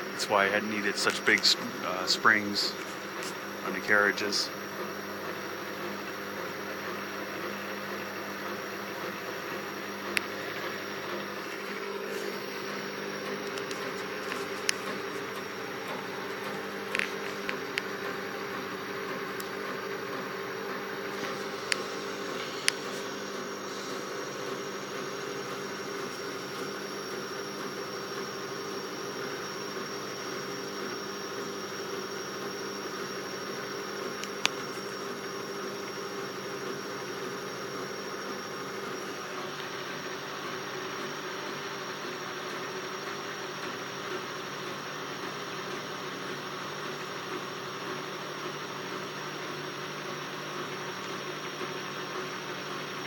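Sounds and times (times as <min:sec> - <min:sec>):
stepper motors humming: 0:00.0 - 0:30.2.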